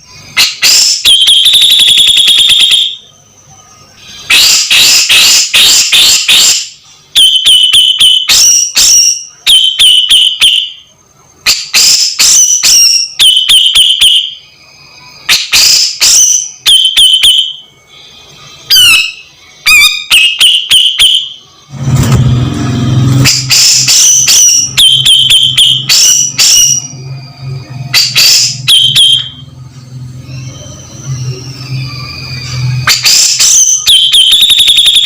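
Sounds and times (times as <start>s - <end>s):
bird harsh chattering calls: 4.1s - 6.7s, 27.9s - 29.3s.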